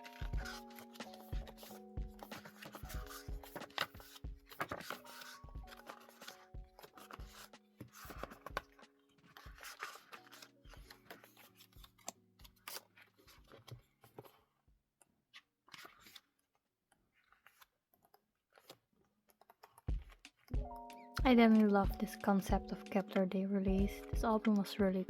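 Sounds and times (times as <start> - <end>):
soft background music: 0.0 - 13.4, 19.9 - 25.0
paper and cardboard rustling: 0.0 - 14.6, 15.3 - 20.6.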